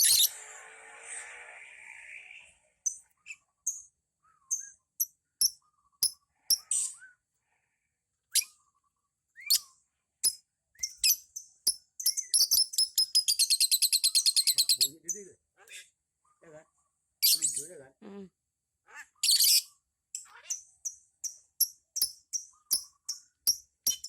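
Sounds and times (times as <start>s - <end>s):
lovebird chirping: 0.0s - 7.2s, 8.3s - 15.2s, 19.2s - 24.0s.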